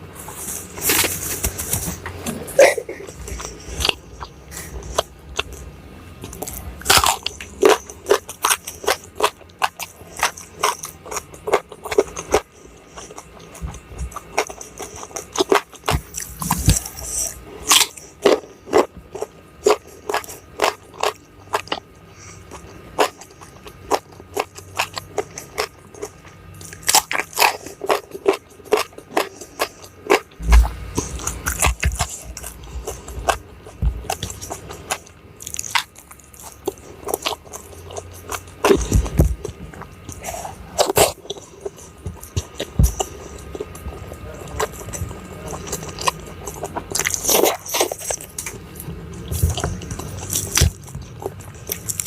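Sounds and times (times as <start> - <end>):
crunching and chewing food: 0.0 - 52.0
low thumps: 30.4 - 32.0.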